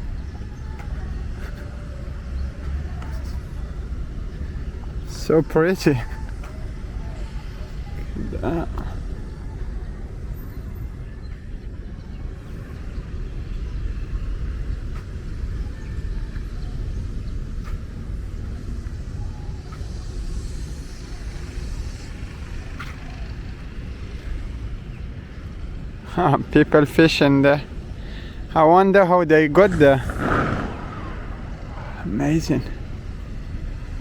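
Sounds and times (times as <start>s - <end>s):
wind buffeting microphone: 27.7s - 34.0s.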